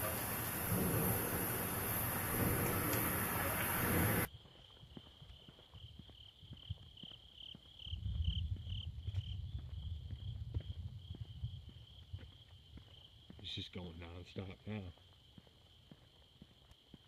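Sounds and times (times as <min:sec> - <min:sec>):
loud rushing noise: 0:00.0 - 0:04.3
low rumble: 0:00.0 - 0:04.3
crickets chirping: 0:00.0 - 0:17.0.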